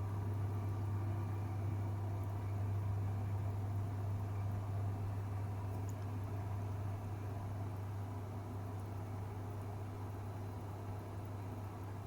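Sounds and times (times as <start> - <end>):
washing machine running: 0.0 - 5.6.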